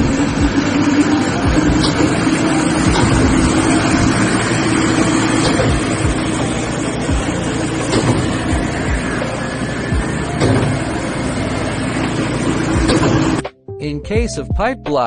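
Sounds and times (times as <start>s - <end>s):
concrete pump engine drone: 0.0s - 13.5s
low pumping thuds: 1.4s - 9.2s.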